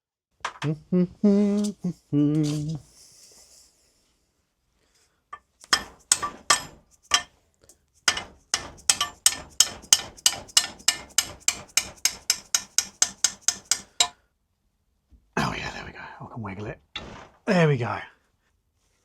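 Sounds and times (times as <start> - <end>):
hammer striking metal: 5.6 - 7.3, 8.1 - 14.2.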